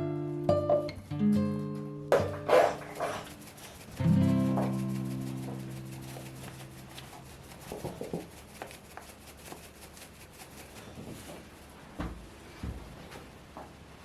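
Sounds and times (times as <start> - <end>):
guitar chord: 0.0 - 2.5
small objects tapping and rubbing: 2.1 - 11.6.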